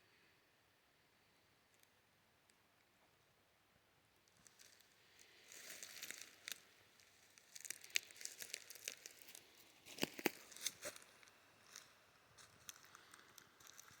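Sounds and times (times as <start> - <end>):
gear crinkling and rustling: 4.3 - 14.0.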